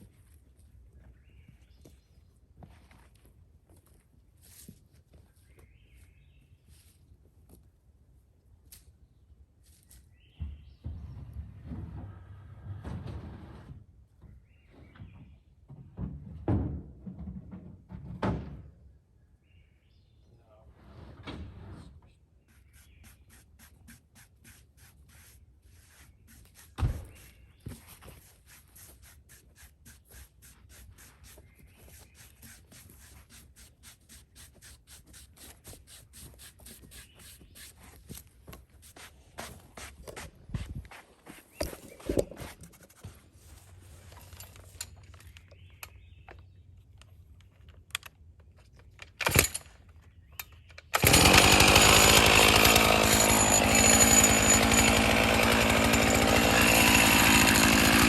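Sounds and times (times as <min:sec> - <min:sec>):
chainsaw running: 0:51.0 - 0:58.0.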